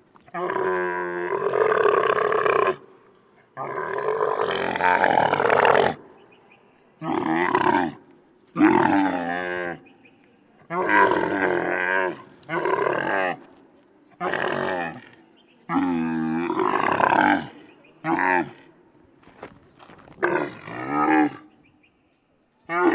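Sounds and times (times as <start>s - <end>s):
camel grunting: 20.1s - 21.6s.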